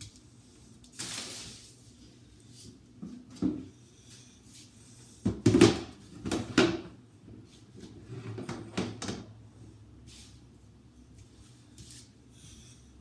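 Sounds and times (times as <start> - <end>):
plastic shelves clattering and scraping: 5.3 - 6.9, 7.9 - 9.3.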